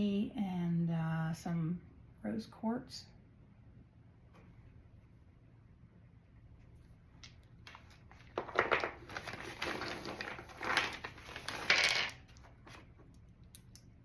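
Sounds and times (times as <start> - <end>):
packing wrap crinkling: 7.7 - 12.9.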